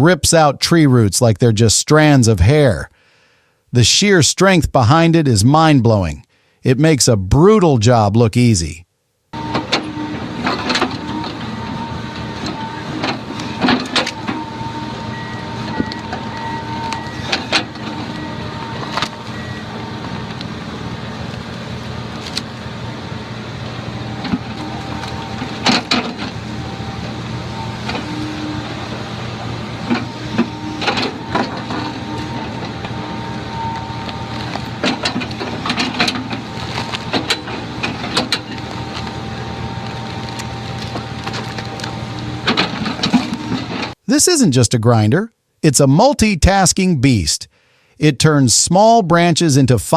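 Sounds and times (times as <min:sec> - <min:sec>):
heavy machine engine running: 0:09.4 - 0:44.0.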